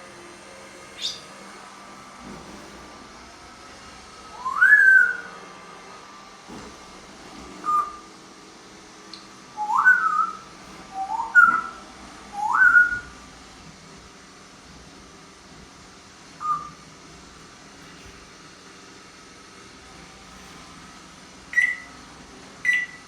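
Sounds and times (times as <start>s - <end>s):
parrot whistling: 1.0s - 1.2s, 4.4s - 5.3s, 9.6s - 10.4s, 12.4s - 13.1s, 16.4s - 16.8s, 21.5s - 21.9s, 22.6s - 23.0s.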